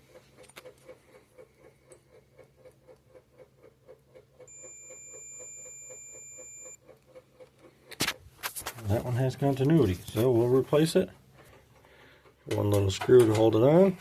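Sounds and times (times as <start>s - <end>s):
multimeter continuity beep: 4.5s - 6.8s.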